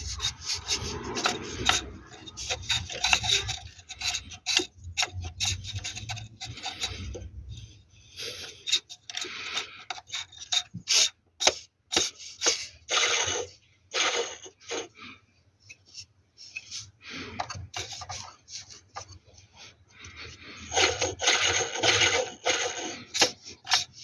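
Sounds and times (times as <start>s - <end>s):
pulley sharp clicks: 0.0s - 7.6s, 20.7s - 24.0s
water pump scraping rasps: 0.0s - 15.1s, 15.7s - 24.0s.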